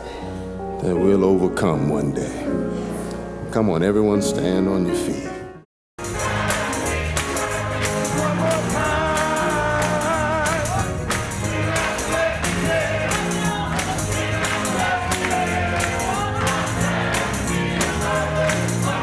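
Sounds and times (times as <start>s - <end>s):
gospel singing with band: 6.0s - 19.0s
percussion hits: 6.0s - 19.0s
steady bass line: 6.0s - 19.0s.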